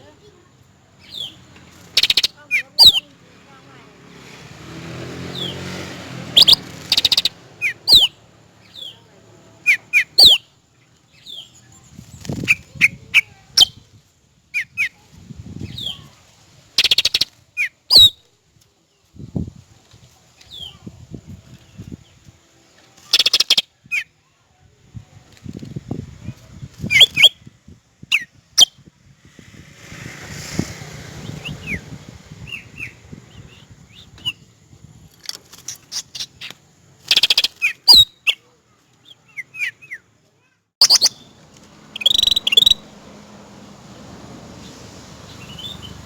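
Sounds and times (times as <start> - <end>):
loud harsh bird calls: 1.0 - 3.1, 4.7 - 9.0, 9.6 - 10.5, 35.9 - 38.4, 40.8 - 42.9
bird whistling calls: 2.0 - 3.1, 6.4 - 9.0, 9.6 - 10.5, 16.8 - 18.2, 23.1 - 24.1, 26.9 - 27.4, 31.3 - 34.4, 37.1 - 38.4, 40.8 - 42.9, 45.3 - 46.0.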